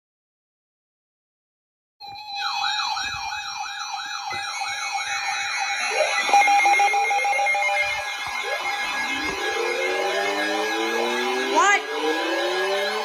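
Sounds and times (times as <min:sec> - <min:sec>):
high warbling tones: 0:02.0 - 0:13.0
siren-like yelp: 0:02.0 - 0:13.0
steady alert tone: 0:02.2 - 0:13.0
rising electronic glides: 0:04.8 - 0:13.0.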